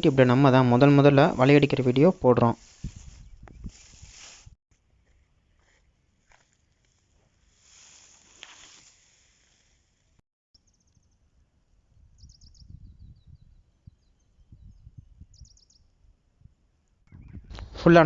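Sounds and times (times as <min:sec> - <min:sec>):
rustling hiss: 0:01.3 - 0:04.6, 0:06.3 - 0:10.2
small bird chirping: 0:12.0 - 0:15.9.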